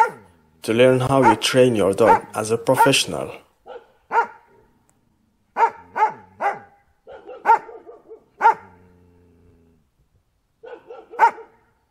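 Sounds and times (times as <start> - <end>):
dog barking: 0.0 - 0.3, 1.1 - 4.6, 5.6 - 8.8, 10.6 - 11.8
dog yipping: 3.7 - 4.4, 5.6 - 8.6, 10.6 - 11.6.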